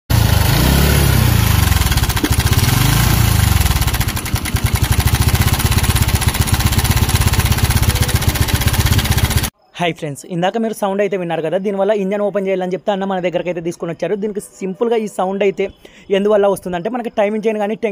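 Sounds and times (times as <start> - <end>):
motorcycle engine clattering: 0.1 - 9.5.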